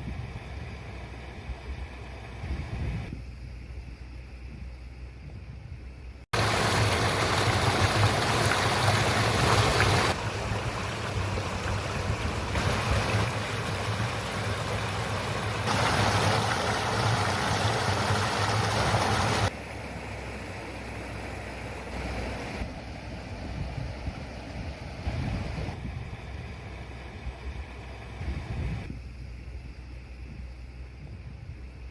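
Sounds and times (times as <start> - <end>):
wind rumble on microphone: 0.0 - 6.6, 7.2 - 19.5, 22.0 - 31.9
stream babbling over stones: 6.4 - 19.5.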